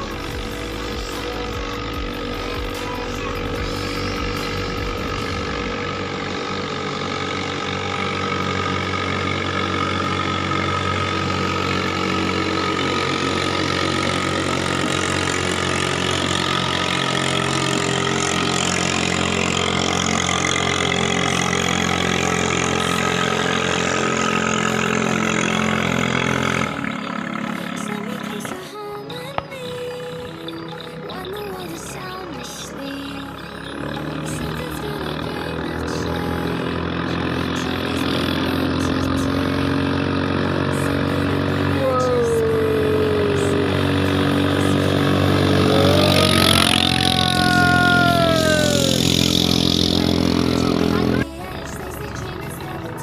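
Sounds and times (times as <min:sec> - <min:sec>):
longtail boat engine running: 0:00.0 - 0:53.0.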